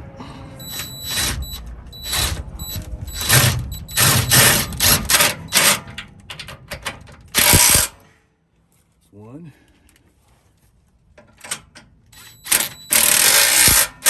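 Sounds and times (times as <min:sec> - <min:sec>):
socket ratchet clicking: 0:12.2 - 0:14.0.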